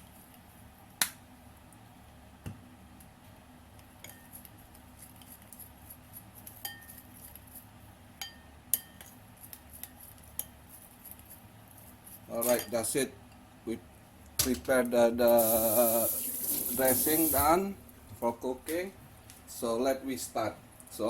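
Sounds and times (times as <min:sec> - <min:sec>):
spoon clinking against dish: 0:06.6 - 0:07.0.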